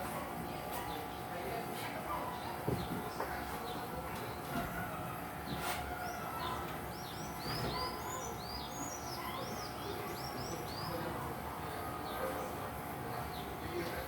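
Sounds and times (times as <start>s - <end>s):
steady background noise: 0.0s - 14.0s
birds chirping: 6.0s - 14.0s.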